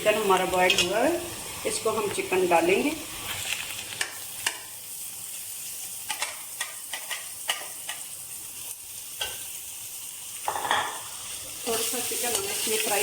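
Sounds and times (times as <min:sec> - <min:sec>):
onions and chicken sizzling in oil: 0:00.0 - 0:13.0
spoon clicking and scraping pan: 0:06.0 - 0:08.2, 0:09.2 - 0:09.6.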